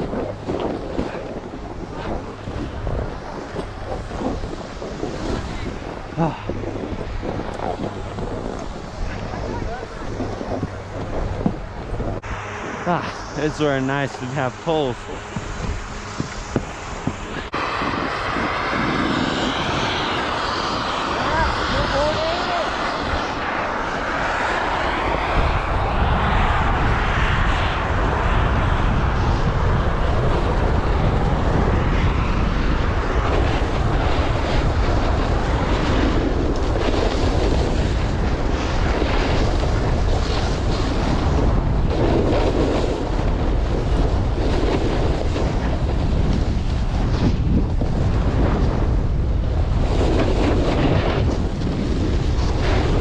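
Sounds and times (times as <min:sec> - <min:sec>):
wind buffeting microphone: 0:00.0 - 0:53.0
snowboard hissing over snow: 0:00.1 - 0:11.6, 0:12.2 - 0:25.6.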